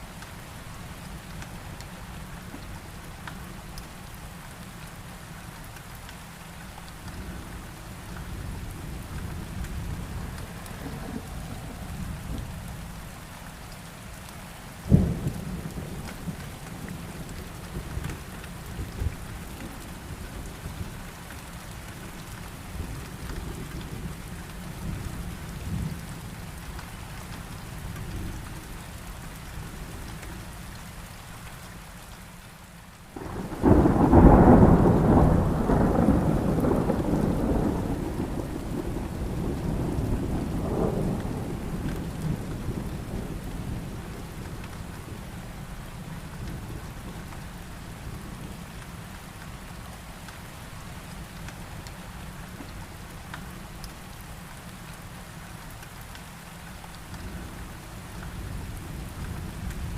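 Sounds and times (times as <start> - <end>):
heavy rain: 0.0 - 59.9
rumble of thunder: 8.3 - 12.9, 14.9 - 21.0, 33.2 - 47.4
sharp thunderclap: 33.2 - 42.8.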